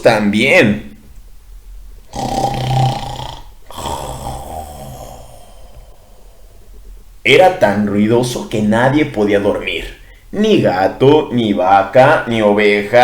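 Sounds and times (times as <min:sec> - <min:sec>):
man imitating snoring: 0:02.1 - 0:06.6.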